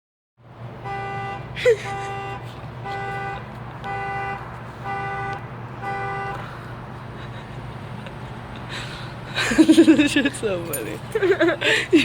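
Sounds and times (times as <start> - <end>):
car horn honking: 0.8 - 6.6.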